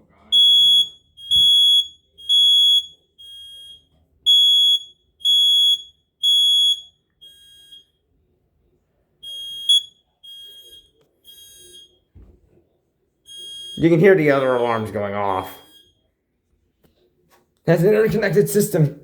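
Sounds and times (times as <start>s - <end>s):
smoke alarm beeping: 0.2s - 8.0s, 9.2s - 12.1s, 13.3s - 16.1s
faint distant alarm beeps: 0.2s - 8.1s, 9.2s - 12.1s, 13.3s - 16.2s.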